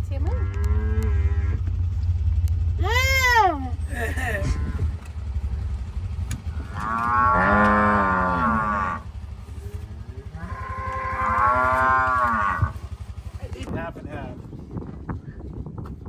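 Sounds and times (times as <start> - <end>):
vehicle engine idling: 0.0 - 16.0
cow mooing: 0.2 - 1.7, 4.4 - 5.0, 6.5 - 12.9.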